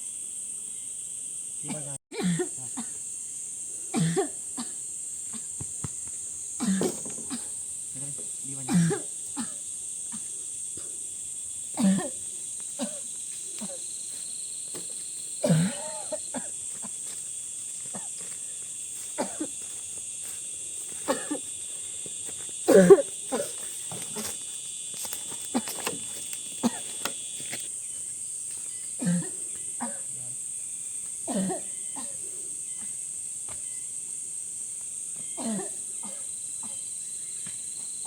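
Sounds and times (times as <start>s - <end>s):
high-pitched insect chorus: 0.0s - 38.0s
woman coughing: 2.1s - 3.0s, 3.9s - 4.8s, 6.6s - 7.5s, 8.7s - 10.2s, 11.8s - 12.2s, 12.8s - 13.0s, 15.4s - 16.5s, 17.9s - 18.1s, 19.2s - 19.5s, 21.0s - 21.4s, 22.7s - 23.6s, 26.6s - 26.8s, 29.0s - 30.1s, 31.3s - 32.2s, 35.4s - 36.8s.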